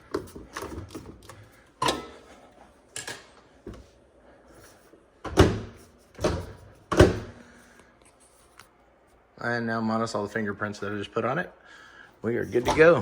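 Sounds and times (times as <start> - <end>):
microwave door knocks and latch clunks: 5.2 - 7.4.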